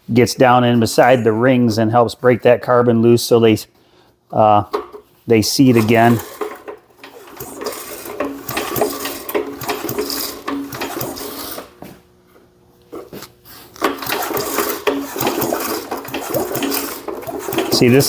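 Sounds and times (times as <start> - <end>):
lawnmower engine turned over by hand: 5.7 - 11.8, 13.8 - 18.0.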